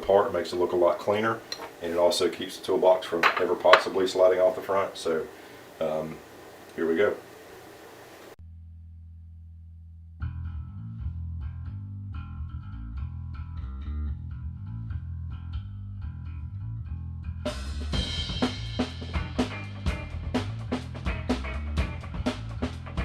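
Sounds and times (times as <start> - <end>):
low bass note: 8.4 - 23.0
bass and guitar groove: 9.9 - 23.0
drum kit: 17.5 - 23.0.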